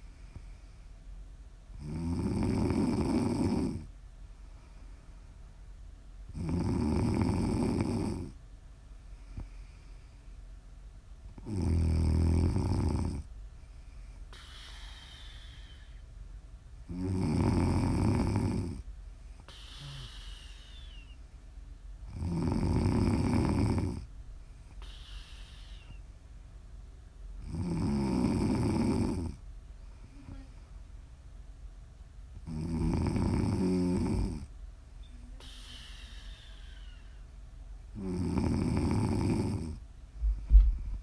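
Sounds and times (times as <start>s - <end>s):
faint low hum: 0.0s - 41.0s
woman snoring: 1.8s - 3.9s, 6.4s - 8.4s, 11.4s - 13.3s, 14.4s - 16.0s, 16.9s - 18.8s, 19.5s - 21.2s, 22.1s - 24.1s, 24.8s - 26.0s, 27.4s - 29.4s, 32.4s - 34.5s, 35.2s - 37.2s, 38.0s - 39.8s
whistling out-breaths: 19.5s - 21.2s, 24.8s - 26.0s, 35.4s - 37.2s.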